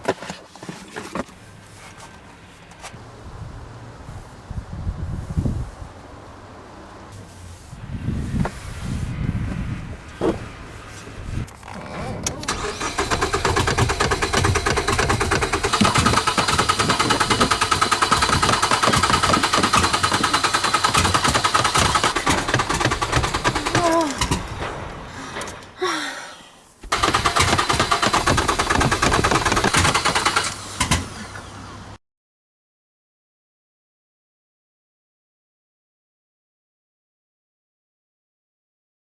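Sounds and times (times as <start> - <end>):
starter motor cranking engine: 11.4 - 25.8, 26.8 - 32.0.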